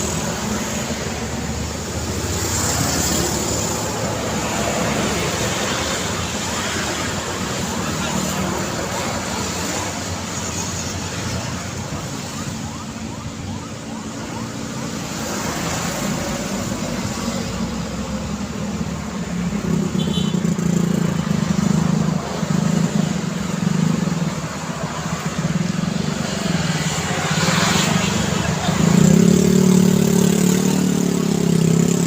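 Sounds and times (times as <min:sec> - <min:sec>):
passing cars and motorbikes: 0:00.0 - 0:32.0.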